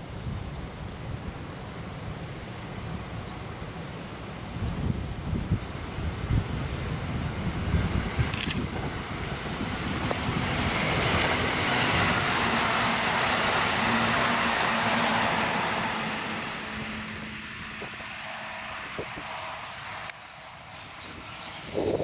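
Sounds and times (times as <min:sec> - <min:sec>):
wind buffeting microphone: 0:00.0 - 0:22.0
vehicle passing by: 0:10.2 - 0:22.0.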